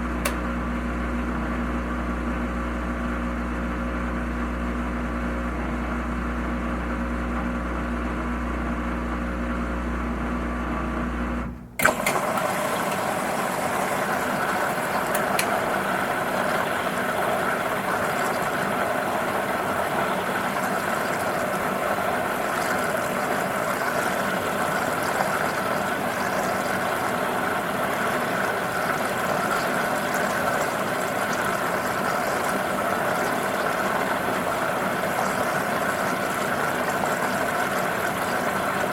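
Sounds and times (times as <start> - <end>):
washing machine running: 0.0 - 38.9.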